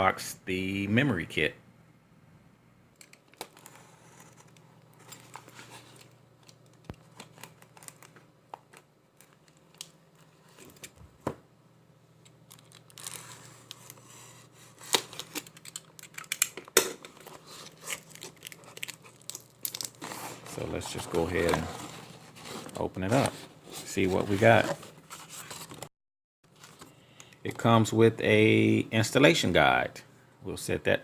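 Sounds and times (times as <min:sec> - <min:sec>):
packaging crinkling and tearing: 0:03.2 - 0:11.0, 0:12.4 - 0:25.9.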